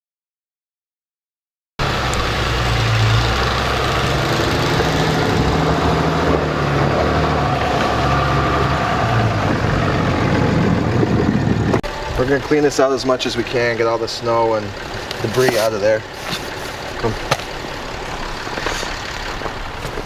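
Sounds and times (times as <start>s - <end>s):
vehicle engine idling: 9.3s - 20.0s.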